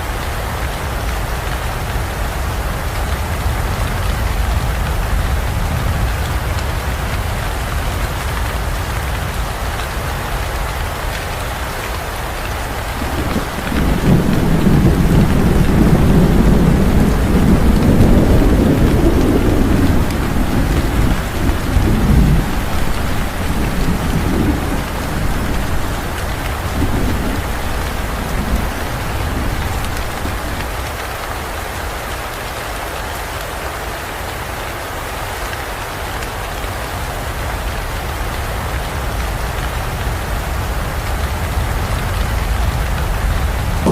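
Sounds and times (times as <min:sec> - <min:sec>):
heavy rain: 0:00.0 - 0:43.9
thunder rumbling: 0:12.4 - 0:31.6, 0:41.5 - 0:43.9.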